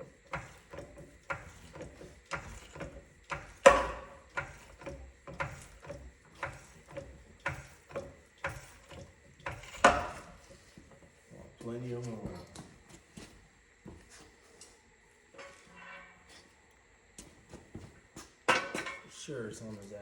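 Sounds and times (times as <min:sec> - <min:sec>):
floor jack clicking and knocking: 0:00.0 - 0:10.5.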